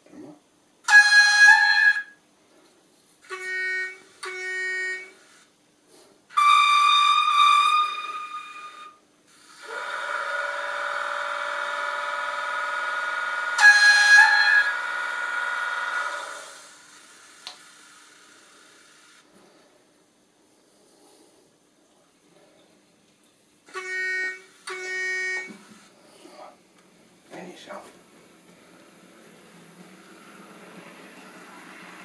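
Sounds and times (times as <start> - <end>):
model train horn blasts: 0.9 - 2.2, 3.2 - 5.4, 6.3 - 9.0, 9.6 - 17.2, 23.7 - 25.6
long steady tone: 3.2 - 5.5, 9.6 - 19.2, 23.7 - 26.6.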